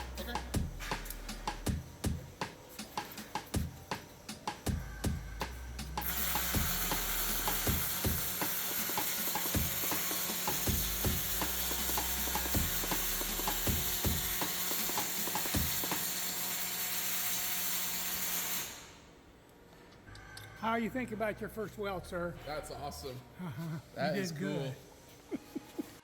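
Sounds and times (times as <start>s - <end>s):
welding arc crackling hiss: 0.0s - 19.2s.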